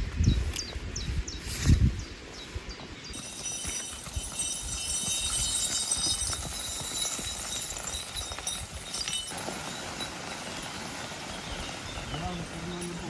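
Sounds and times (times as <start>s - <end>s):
clopping steps on hard ground: 3.1s - 13.0s.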